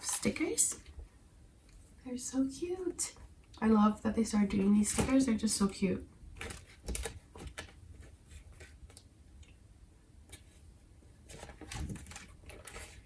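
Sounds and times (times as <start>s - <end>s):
paper rustling and tapping: 6.4s - 9.1s, 11.3s - 13.0s.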